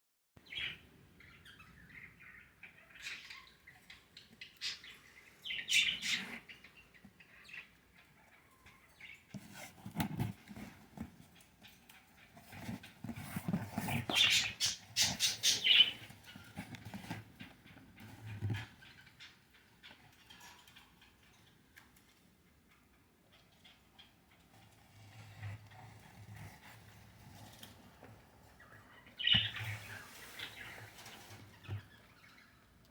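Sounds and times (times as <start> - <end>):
budgie chicks chirping: 0.5 - 10.6, 12.1 - 20.4, 28.5 - 32.8.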